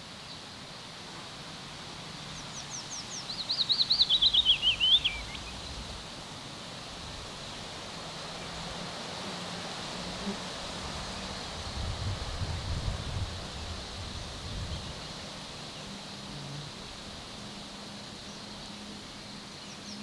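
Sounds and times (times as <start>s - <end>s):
faint outdoor hiss: 0.0s - 20.0s
songbird singing: 2.0s - 8.8s, 13.5s - 20.0s.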